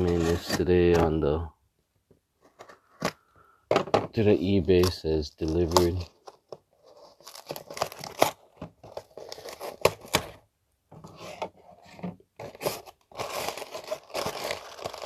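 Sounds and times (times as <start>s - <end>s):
packaging crinkling by hand: 4.8s - 10.3s, 12.4s - 15.0s.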